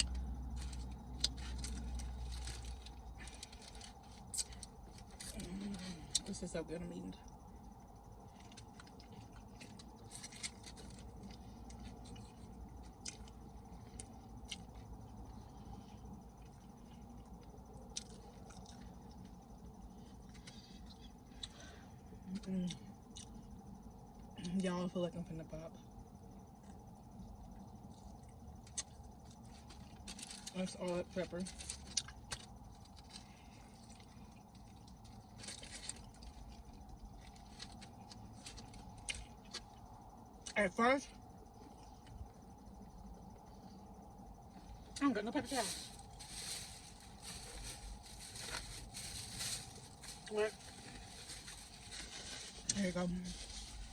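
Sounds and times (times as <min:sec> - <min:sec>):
chewing and mouth sounds: 0:16.4 - 0:21.6
person chewing: 0:17.2 - 0:19.3.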